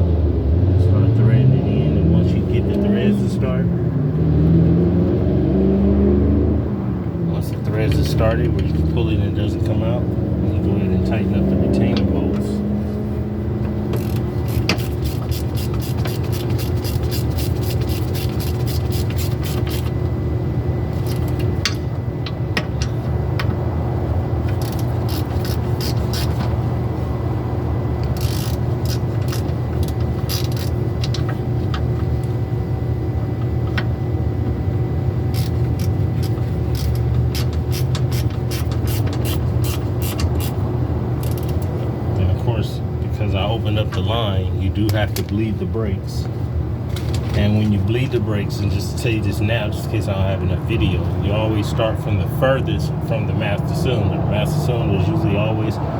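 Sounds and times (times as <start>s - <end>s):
low mechanical hum: 0.0s - 55.9s
ratchet wrench clicking: 13.9s - 20.0s, 21.0s - 21.8s, 24.5s - 26.5s, 28.0s - 31.2s, 35.3s - 40.6s, 41.2s - 41.7s.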